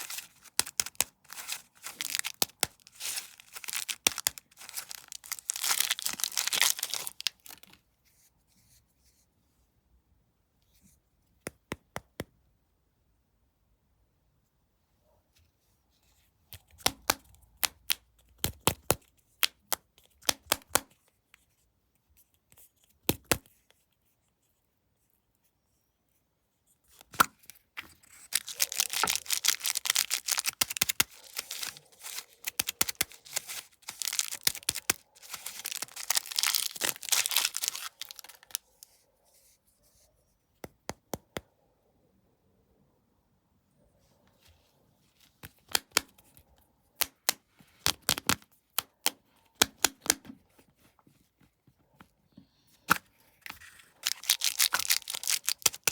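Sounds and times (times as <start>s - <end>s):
plastic wrapper tearing and crinkling: 0.0s - 7.8s, 27.1s - 38.8s, 53.6s - 55.9s.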